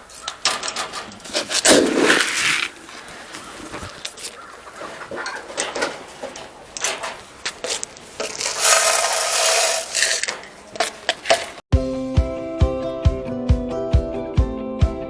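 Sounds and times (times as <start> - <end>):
cages and feeders rattling: 0.0 - 11.6.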